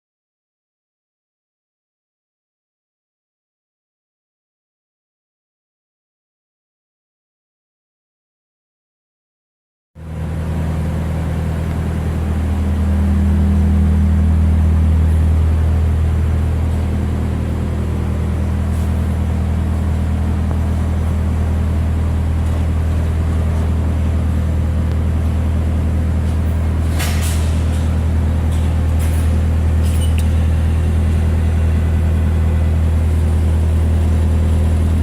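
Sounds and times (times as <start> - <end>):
lathe motor hum: 10.0 - 26.9, 27.8 - 35.0.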